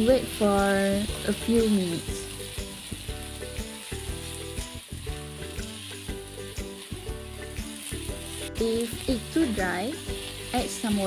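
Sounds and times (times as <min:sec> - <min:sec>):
food sizzling in oil: 0:00.0 - 0:11.0.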